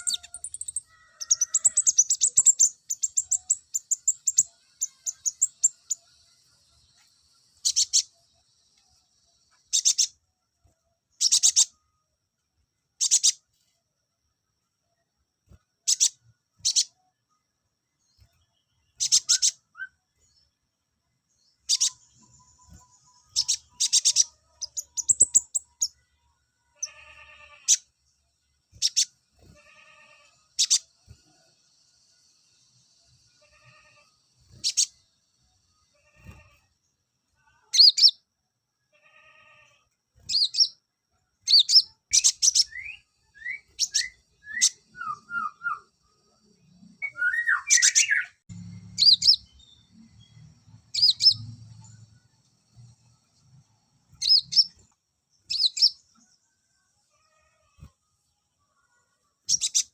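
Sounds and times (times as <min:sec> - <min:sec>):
bird high thin trills: 0:00.0 - 0:06.1
bird singing sharp chirps: 0:00.0 - 0:06.1, 0:18.2 - 0:20.0, 0:21.5 - 0:26.0, 0:41.5 - 0:45.9, 0:46.7 - 0:52.9, 0:54.1 - 0:54.8, 0:55.4 - 0:56.2, 0:59.5 - 0:59.9.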